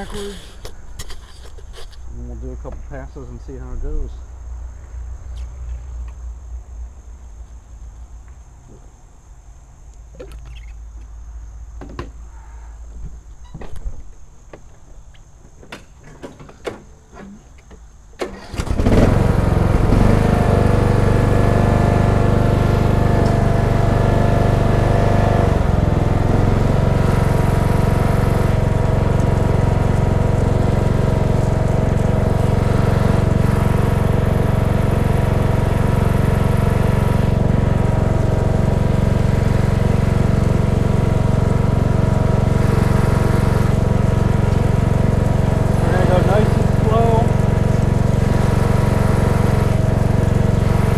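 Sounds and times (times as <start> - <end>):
riding mower engine starting: 0.0 - 4.1, 15.5 - 50.9.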